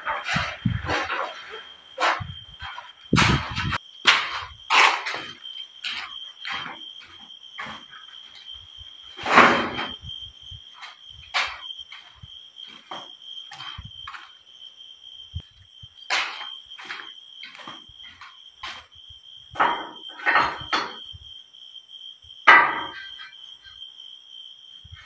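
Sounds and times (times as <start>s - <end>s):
knocks and clatters: 0.0s - 10.1s, 10.7s - 14.4s, 16.1s - 18.9s, 19.5s - 21.1s, 22.5s - 23.4s
crickets trilling: 0.0s - 25.0s.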